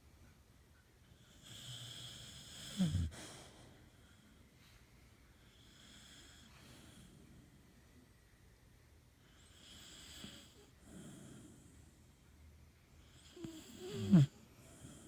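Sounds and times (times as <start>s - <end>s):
dog snoring: 1.2s - 4.2s, 5.5s - 7.2s, 9.3s - 11.9s, 13.0s - 15.0s.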